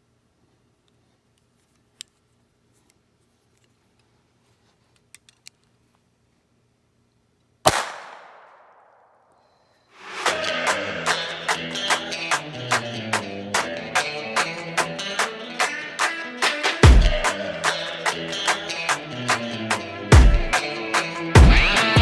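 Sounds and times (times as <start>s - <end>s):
gunshot with echo: 7.7s - 9.2s
guitar music: 10.1s - 22.0s.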